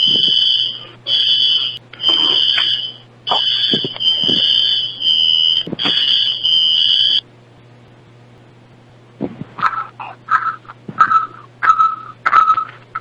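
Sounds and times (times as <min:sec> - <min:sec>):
high-pitched electronic alarm tone: 0:00.0 - 0:07.2.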